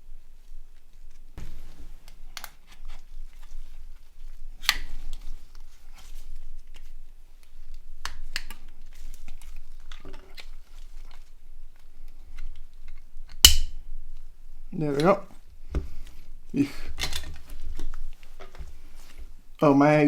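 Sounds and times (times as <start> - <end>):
handling noise: 0.4 - 13.3
plastic clicks and snaps: 7.4 - 13.8.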